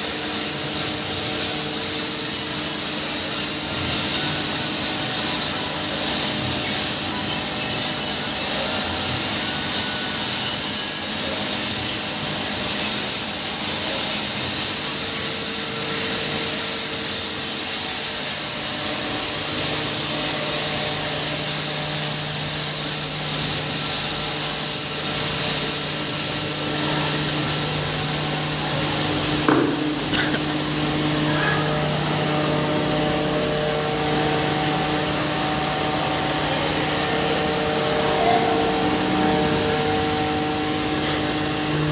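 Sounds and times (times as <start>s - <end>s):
hammer mill grinding: 0.0s - 41.9s
sharp knock: 29.5s - 29.9s.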